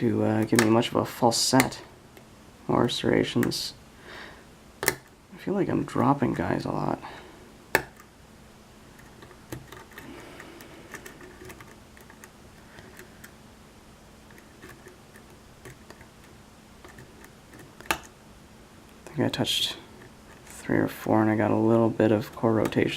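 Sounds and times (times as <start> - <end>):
lock pick clicking on pins: 4.8 - 5.1.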